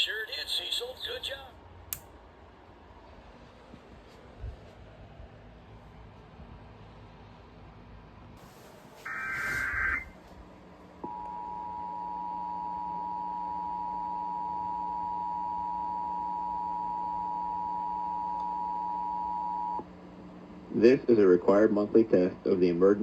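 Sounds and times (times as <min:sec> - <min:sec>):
two-tone alert alarm: 0:09.1 - 0:10.1.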